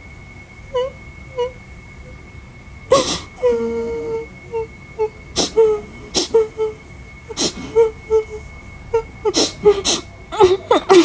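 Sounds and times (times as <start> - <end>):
girl crying and sobbing: 2.9 - 11.0.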